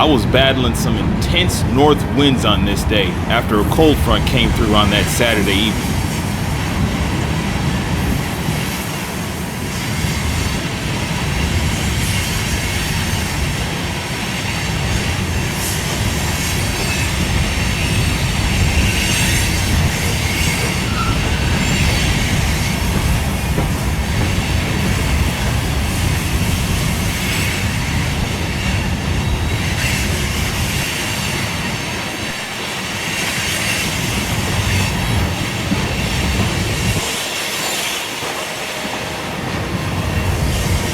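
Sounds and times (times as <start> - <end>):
freight train cars rolling: 0.0 - 40.9
wind buffeting microphone: 2.8 - 40.9
train wheel squeals: 7.2 - 40.9
wheels clicking over rail joints: 14.7 - 27.1, 32.1 - 40.9.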